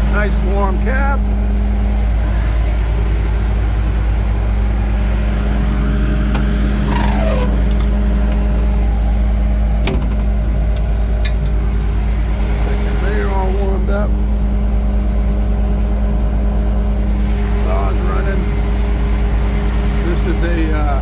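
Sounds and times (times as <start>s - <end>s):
engine droning: 0.0s - 21.0s.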